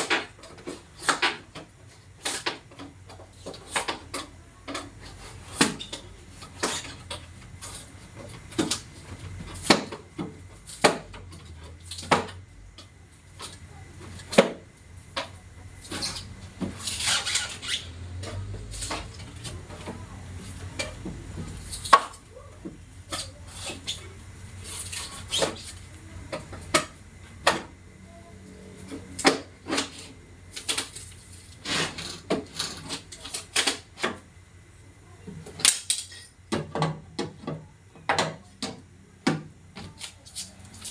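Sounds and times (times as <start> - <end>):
scraping: 15.8 - 22.1
tools and parts clinking: 35.6 - 36.9.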